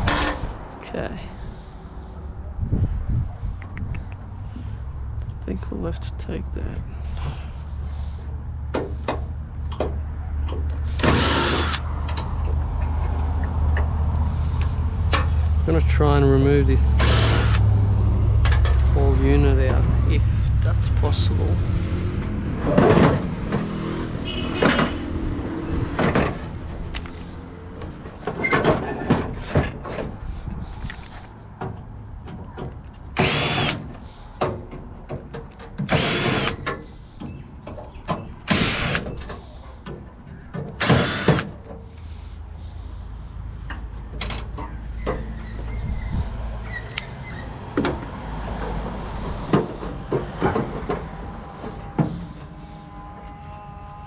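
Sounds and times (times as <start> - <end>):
loud harsh bursts: 11.0 - 11.8, 17.0 - 17.6, 33.2 - 33.8, 40.8 - 41.5.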